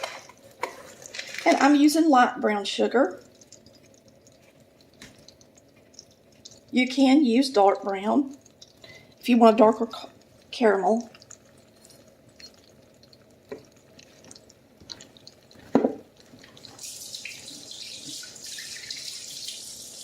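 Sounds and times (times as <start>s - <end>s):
sugar hissing in melted butter: 16.7s - 20.0s.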